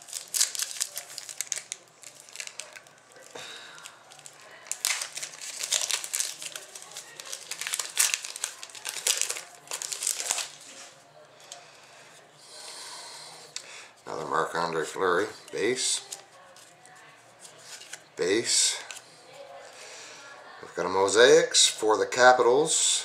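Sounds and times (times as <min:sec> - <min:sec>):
packaging crinkling: 0:00.0 - 0:10.9.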